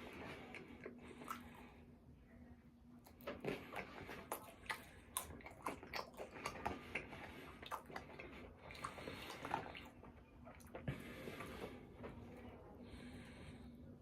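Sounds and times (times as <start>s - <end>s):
wet chewing and lip-smacking: 0.0s - 1.8s, 3.0s - 11.7s.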